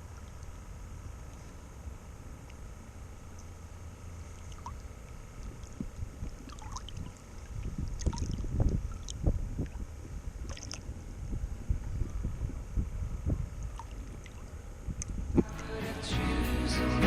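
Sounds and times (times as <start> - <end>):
water lapping around boat: 0.0 - 15.5
wind rumble on microphone: 5.3 - 15.6.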